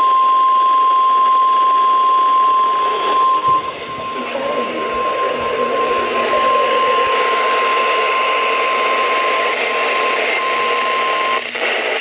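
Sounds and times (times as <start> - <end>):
radio static: 2.6 - 12.0.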